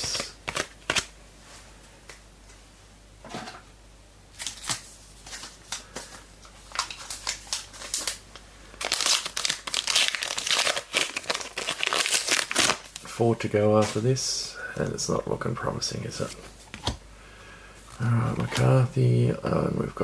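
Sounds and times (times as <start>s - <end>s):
card packet wrapper crinkling: 4.4s - 13.1s.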